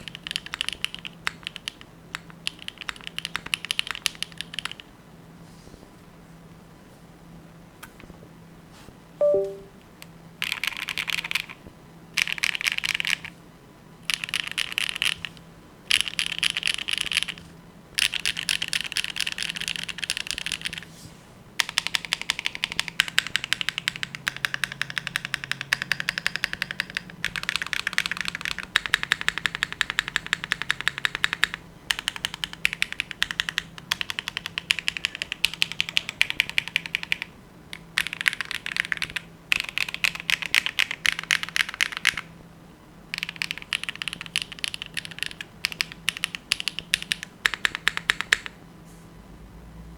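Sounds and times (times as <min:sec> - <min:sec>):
mechanical keyboard typing: 0:00.0 - 0:04.8, 0:10.4 - 0:11.6, 0:12.2 - 0:13.3, 0:14.1 - 0:17.4, 0:18.0 - 0:20.9, 0:21.6 - 0:42.3, 0:43.1 - 0:48.6.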